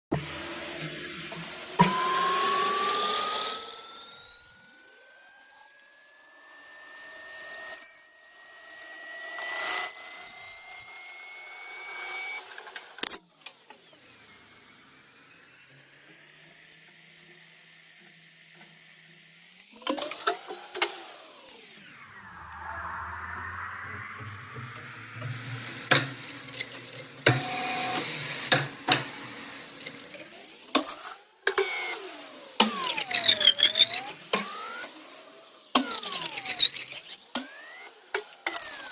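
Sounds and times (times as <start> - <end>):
machine tool motor whine: 0.5 - 38.9
machine motor humming: 21.5 - 30.2.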